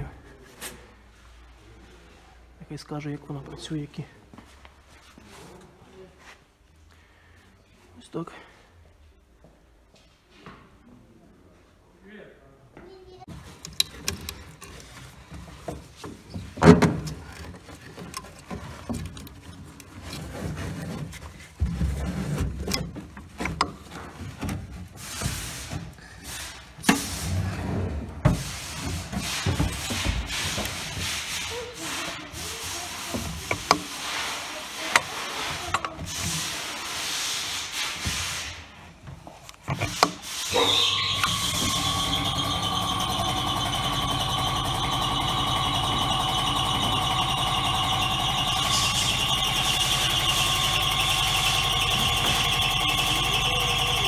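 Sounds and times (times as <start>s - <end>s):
machine running with whine: 40.5s - 54.0s.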